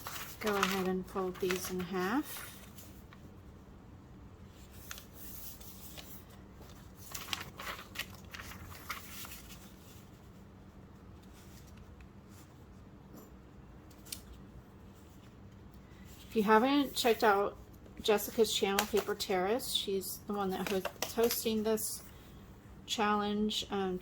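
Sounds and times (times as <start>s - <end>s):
paper rustling and crinkling: 0.0s - 3.3s, 4.5s - 10.5s, 11.2s - 12.6s, 18.1s - 19.3s, 20.4s - 21.6s.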